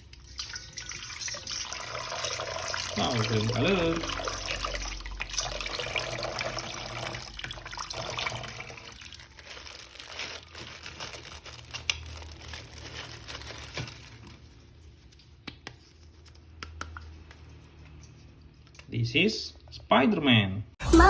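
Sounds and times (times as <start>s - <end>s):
water running from a tap: 0.0s - 9.4s
water splashing over plastic figure: 0.0s - 9.4s.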